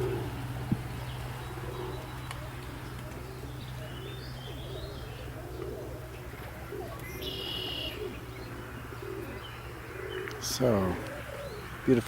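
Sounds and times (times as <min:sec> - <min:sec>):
pigeons cooing: 0:00.0 - 0:12.0
high bird chirp: 0:07.0 - 0:10.4.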